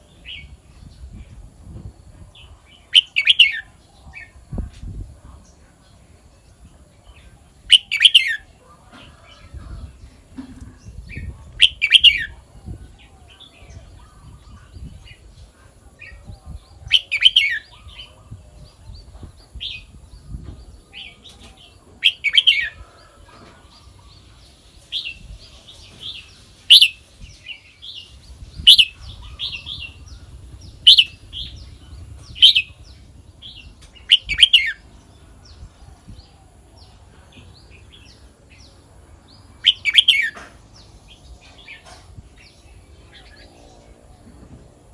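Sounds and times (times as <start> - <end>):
bird singing whistled phrases: 28.7 - 29.0.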